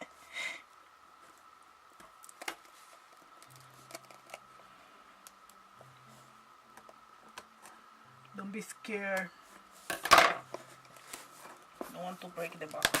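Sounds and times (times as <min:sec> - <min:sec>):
faint high whine: 0:00.0 - 0:13.0.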